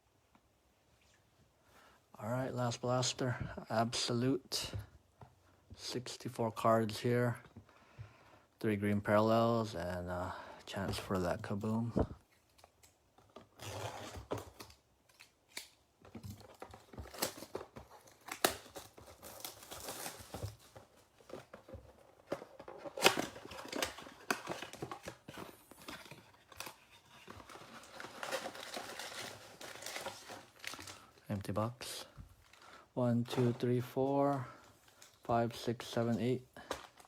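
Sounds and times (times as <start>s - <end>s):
plastic wrap and cardboard tearing: 13.4s - 21.5s, 22.2s - 31.2s
foil packs rustling: 16.2s - 37.0s.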